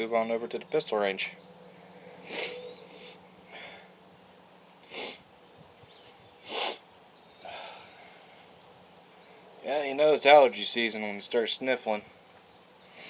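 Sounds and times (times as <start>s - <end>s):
person sniffling: 2.2s - 3.9s, 4.8s - 5.2s, 6.4s - 6.8s.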